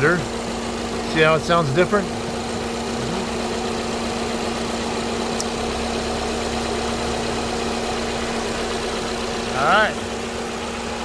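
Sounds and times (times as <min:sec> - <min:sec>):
car engine idling unevenly: 0:00.0 - 0:11.0.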